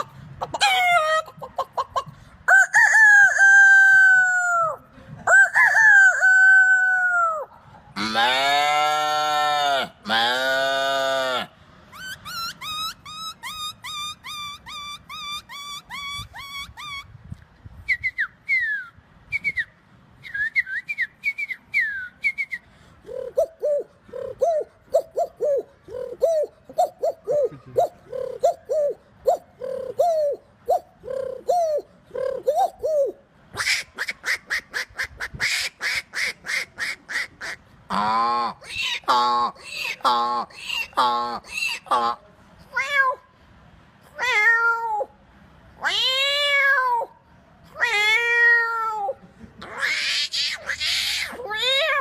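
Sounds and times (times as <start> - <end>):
low repeated animal calls: 5.4 - 17.0
falling whistles: 17.8 - 22.7
animal lowing call: 23.0 - 43.2.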